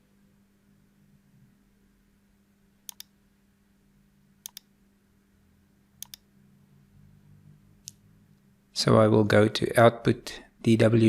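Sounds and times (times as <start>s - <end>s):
faint room hum: 0.0s - 11.0s
computer mouse double-clicks: 2.9s - 3.1s, 4.4s - 4.7s, 6.0s - 6.2s.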